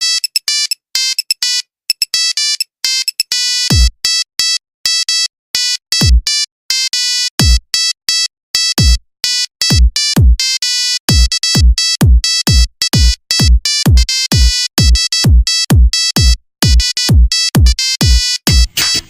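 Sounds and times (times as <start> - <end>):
synth ringtone melody: 0.0 - 7.1.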